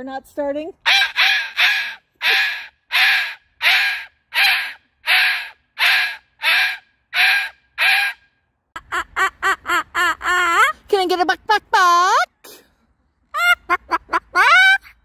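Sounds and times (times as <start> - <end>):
cockatoo squawking: 0.8 - 8.2.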